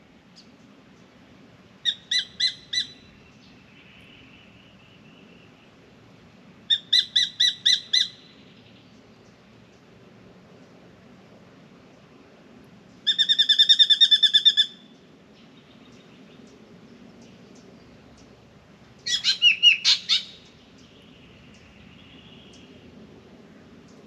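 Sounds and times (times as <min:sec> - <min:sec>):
bird calling: 0:01.8 - 0:05.5, 0:06.7 - 0:08.6, 0:13.0 - 0:15.0, 0:19.0 - 0:22.7.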